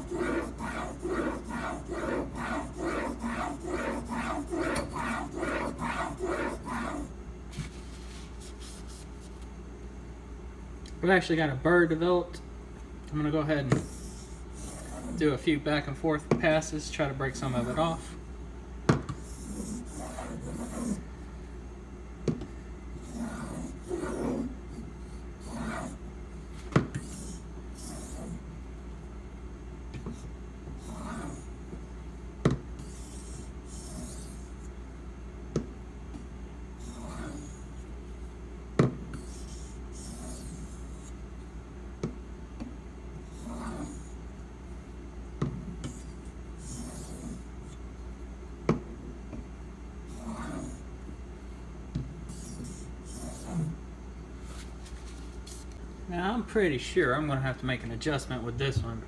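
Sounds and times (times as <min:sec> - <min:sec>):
knife scraping on whetstone: 0:00.0 - 0:09.1, 0:13.8 - 0:15.3, 0:19.2 - 0:21.0, 0:23.0 - 0:24.8, 0:25.4 - 0:26.0, 0:26.9 - 0:28.4, 0:30.8 - 0:31.5, 0:32.8 - 0:34.5, 0:36.8 - 0:37.6, 0:39.1 - 0:41.2, 0:43.3 - 0:44.2, 0:45.9 - 0:47.8, 0:50.1 - 0:50.8, 0:52.3 - 0:53.8.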